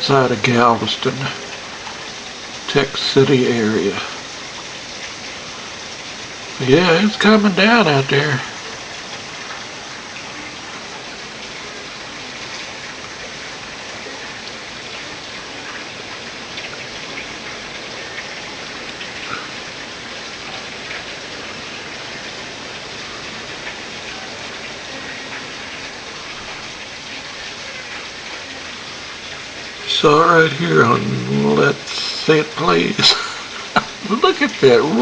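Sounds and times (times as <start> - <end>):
heavy rain pouring: 0.0 - 35.0.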